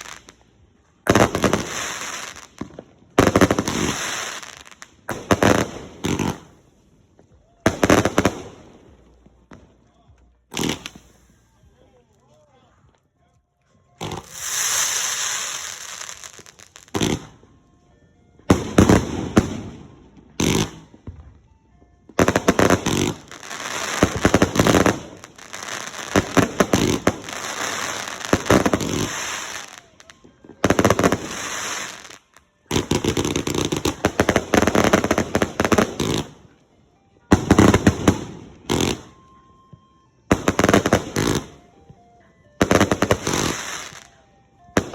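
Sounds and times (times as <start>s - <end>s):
fireworks crackling and hissing: 0.0s - 9.5s, 10.4s - 12.3s, 14.0s - 17.4s, 18.6s - 21.1s, 22.2s - 36.5s, 42.6s - 44.2s.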